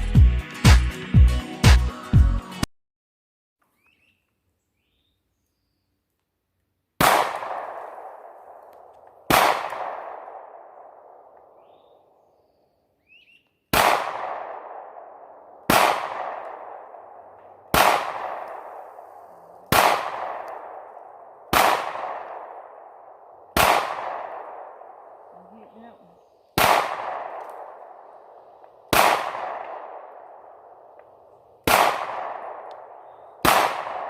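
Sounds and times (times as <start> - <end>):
handgun shots echoing: 7.0 - 11.8, 13.7 - 25.6, 26.6 - 34.0.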